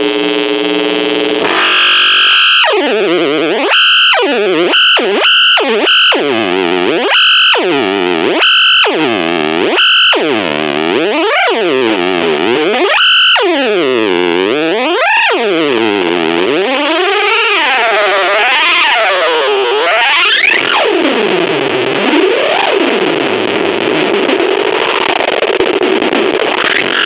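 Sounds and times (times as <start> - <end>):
delay pedal oscillation swooping: 0.0 - 27.0
high steady tone: 1.0 - 15.6.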